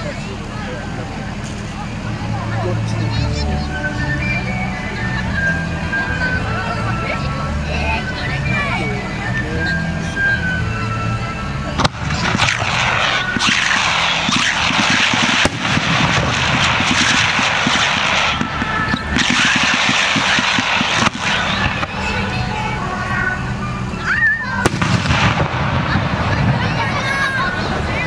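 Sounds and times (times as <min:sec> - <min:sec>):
fireworks crackling hiss: 0:00.0 - 0:28.0
fireworks shell bursts: 0:11.8 - 0:22.2, 0:24.6 - 0:26.6.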